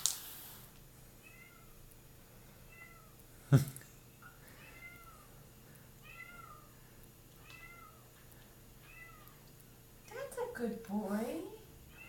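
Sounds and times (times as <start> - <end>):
kitten meowing: 7.4 - 8.0, 8.8 - 9.3.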